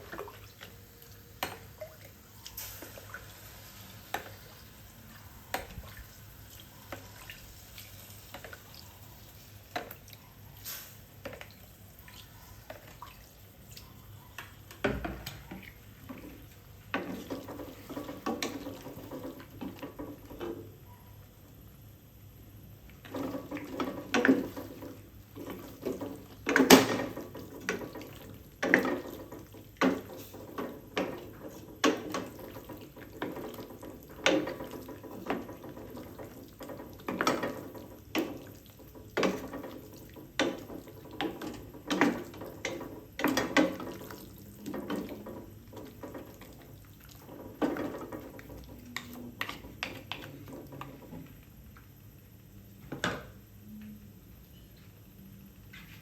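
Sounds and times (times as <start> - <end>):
water running: 0.0 - 10.6, 23.0 - 51.4.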